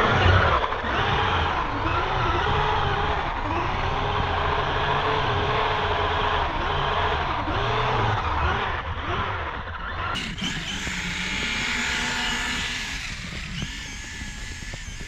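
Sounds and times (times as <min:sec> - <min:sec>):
electric motor whining and revving: 0:10.0 - 0:15.0.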